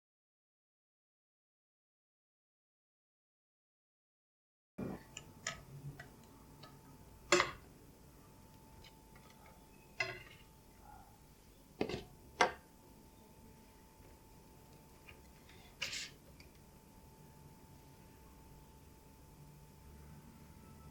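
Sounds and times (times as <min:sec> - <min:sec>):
faint high hum: 0:04.8 - 0:20.9.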